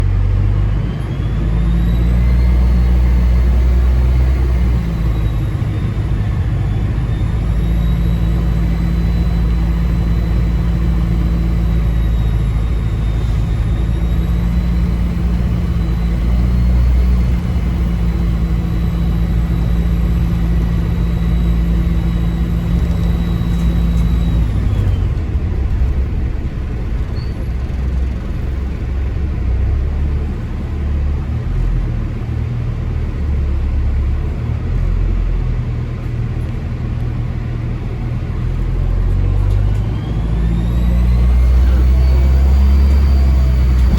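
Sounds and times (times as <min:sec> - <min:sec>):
diesel bus engine running: 0:00.0 - 0:43.9
turbocharger whistle: 0:00.7 - 0:25.3.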